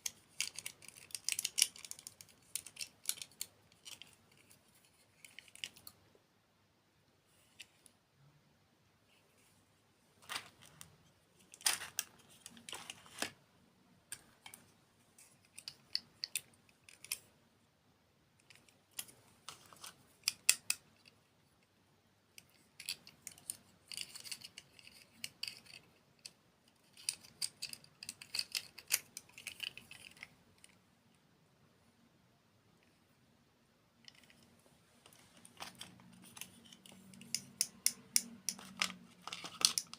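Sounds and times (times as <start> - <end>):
crisp clicks and crackles: 0.0 - 6.0, 10.2 - 13.4, 14.1 - 17.4, 22.4 - 30.8, 34.0 - 39.9.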